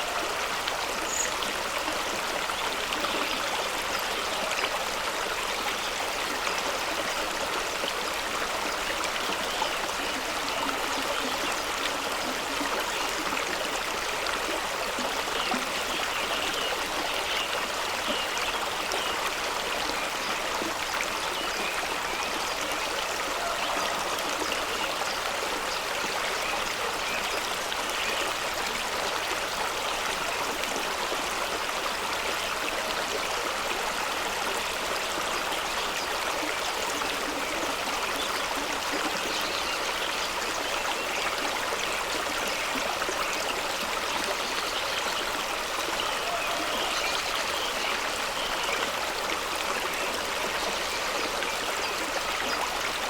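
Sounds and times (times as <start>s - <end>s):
stream rushing over rocks: 0.0s - 53.0s.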